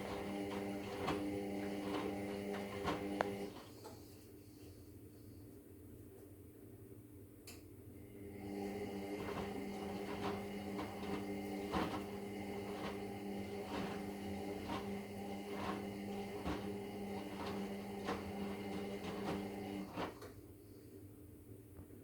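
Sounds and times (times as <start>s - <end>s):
washing machine motor humming: 0.0s - 4.1s, 8.0s - 20.5s.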